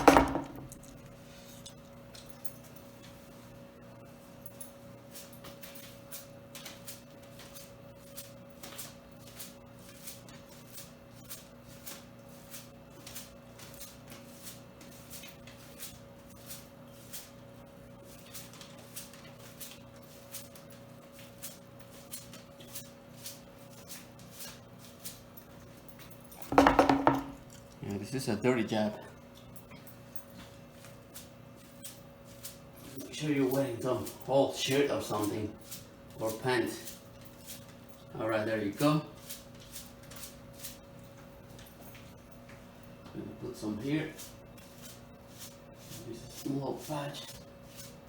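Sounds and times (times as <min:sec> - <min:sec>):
texture mix spattering on wall: 0:26.5 - 0:27.4.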